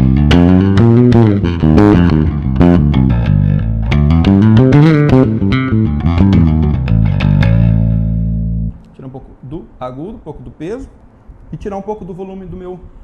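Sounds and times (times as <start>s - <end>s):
electric bass plucked notes: 0.0s - 8.8s.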